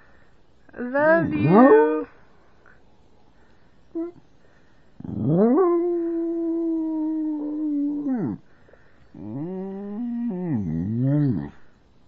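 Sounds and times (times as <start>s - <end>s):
dog howling: 0.9s - 2.1s, 5.1s - 8.4s.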